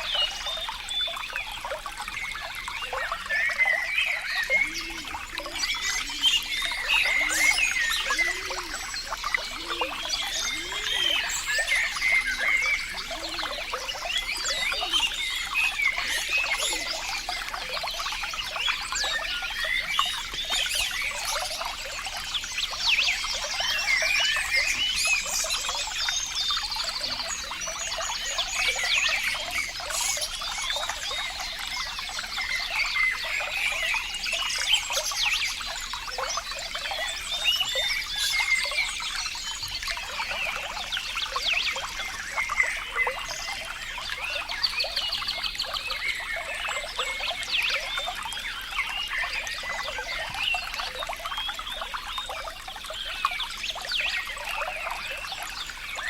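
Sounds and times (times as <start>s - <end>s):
water trickling and burbling: 0.0s - 56.0s.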